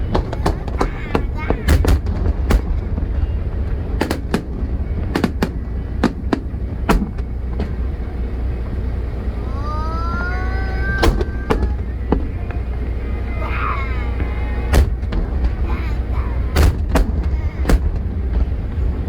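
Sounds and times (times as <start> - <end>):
firework shells bursting: 0.0 - 19.0
steady low rumble: 0.0 - 19.0
firework rising whistle: 8.5 - 18.9.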